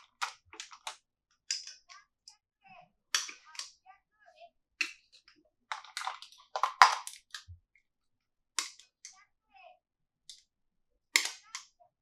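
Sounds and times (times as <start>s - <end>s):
plastic toy pieces clicking: 0.0s - 1.9s, 3.1s - 3.8s, 4.8s - 7.5s, 8.6s - 9.2s, 11.2s - 11.7s.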